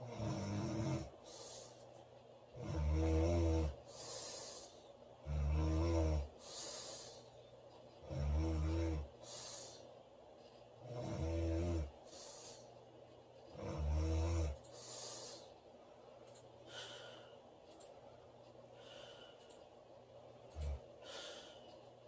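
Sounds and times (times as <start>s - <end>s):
woman snoring heavily: 0.0s - 1.2s, 2.6s - 7.2s, 8.0s - 9.8s, 10.8s - 12.6s, 13.6s - 15.5s.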